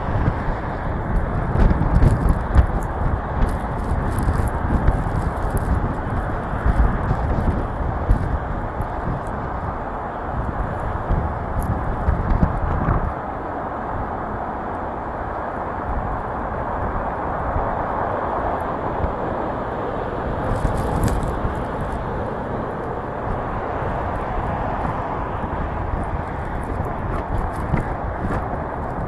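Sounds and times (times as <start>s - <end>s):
car driving on snow: 0.0s - 29.0s
strong wind: 0.0s - 29.0s.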